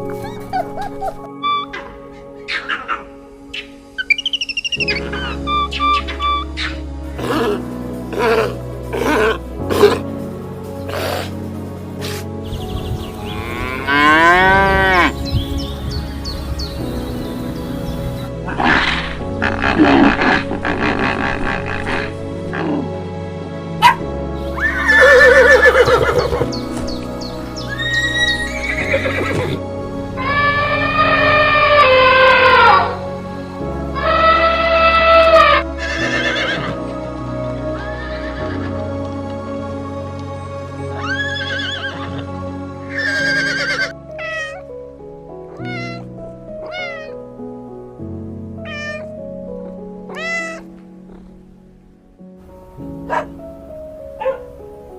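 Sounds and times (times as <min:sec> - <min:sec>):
background music: 0:00.0 - 0:54.9
horse whinnying: 0:24.6 - 0:26.5, 0:27.7 - 0:29.6, 0:34.0 - 0:36.8, 0:41.0 - 0:42.2, 0:42.9 - 0:44.6, 0:45.6 - 0:47.2, 0:48.6 - 0:49.1, 0:50.2 - 0:50.6
cat meowing: 0:43.6 - 0:44.6, 0:45.5 - 0:47.2, 0:48.6 - 0:49.2, 0:50.1 - 0:50.7.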